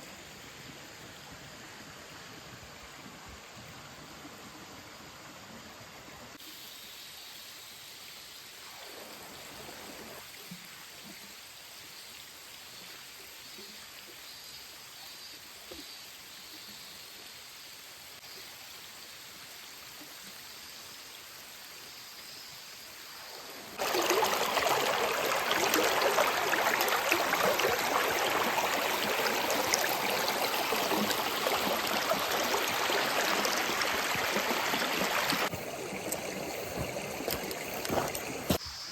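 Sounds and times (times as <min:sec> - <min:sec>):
stream water rushing over rocks: 0:23.4 - 0:38.6.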